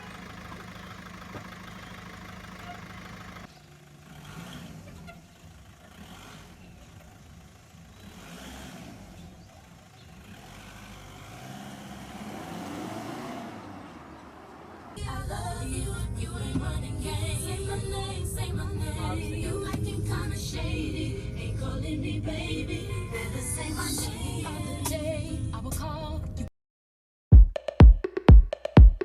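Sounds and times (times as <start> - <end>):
car engine driving off: 0.0 - 26.4
music: 15.0 - 26.5, 27.3 - 29.0.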